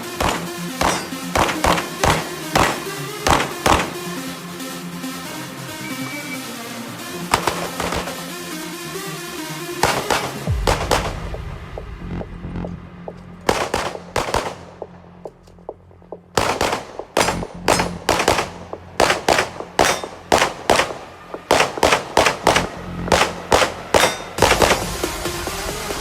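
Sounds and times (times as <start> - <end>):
handgun shots: 0.2 - 4.0, 7.3 - 8.2, 9.8 - 11.1, 16.4 - 24.8.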